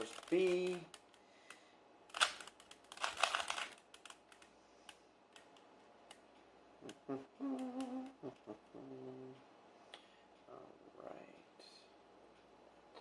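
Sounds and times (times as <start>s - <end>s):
plastic cube twisting clicks: 2.1s - 4.5s.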